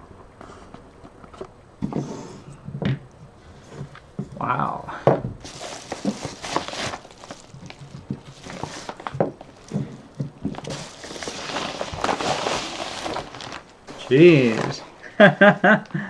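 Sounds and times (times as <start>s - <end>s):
bag rustling: 5.4s - 15.0s.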